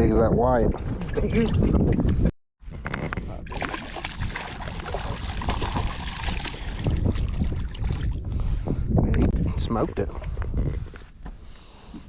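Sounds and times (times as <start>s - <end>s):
water splashing: 3.5s - 8.2s.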